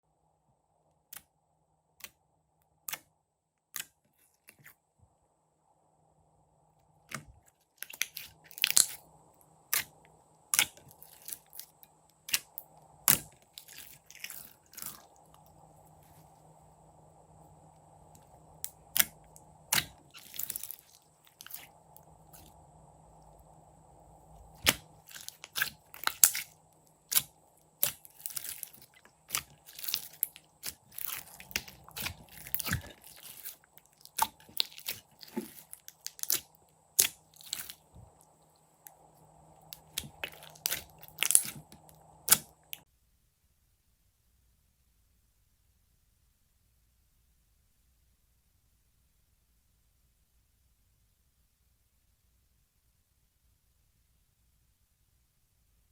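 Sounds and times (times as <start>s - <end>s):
slime crunching and crackling: 7.1s - 15.4s, 18.6s - 22.5s, 24.5s - 39.0s, 39.6s - 42.8s.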